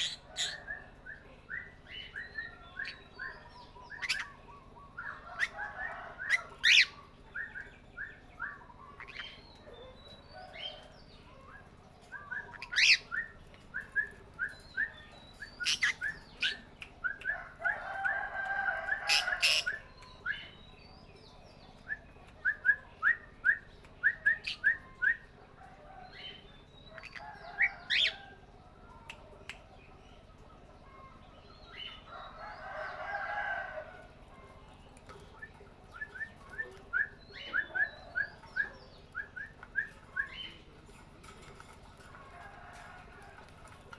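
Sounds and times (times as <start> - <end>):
parrots raspy chatter: 0.0 - 0.7, 4.0 - 7.0, 15.6 - 16.7, 17.6 - 19.8
parrots chirping and calling: 0.0 - 0.8, 1.6 - 10.9, 11.5 - 14.0, 15.0 - 16.7, 17.4 - 20.5.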